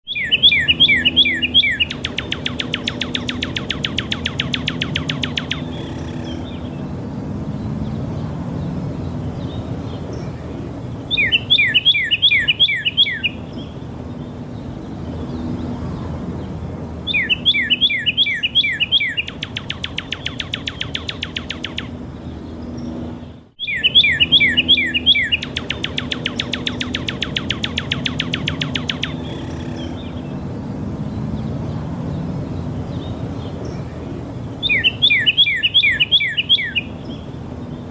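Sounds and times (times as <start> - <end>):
cardinal singing whistles and trills: 0.0 - 7.2, 9.6 - 15.6, 17.0 - 22.8, 23.5 - 30.6, 32.6 - 37.9
steady low hum: 0.3 - 11.5, 19.2 - 34.6.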